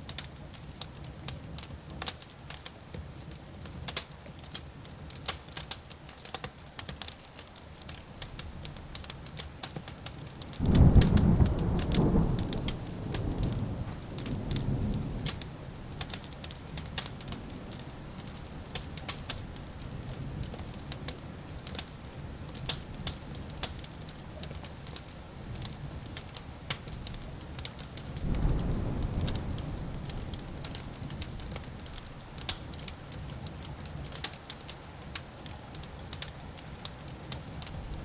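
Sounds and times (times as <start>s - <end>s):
wood fire crackling and popping: 0.0s - 38.0s
thunder rolling: 10.6s - 15.4s, 28.2s - 31.9s.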